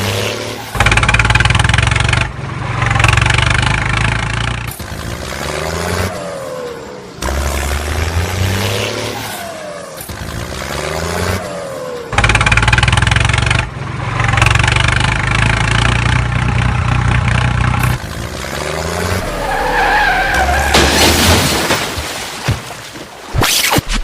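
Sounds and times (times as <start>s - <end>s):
loud vehicle engine: 0.0s - 21.9s.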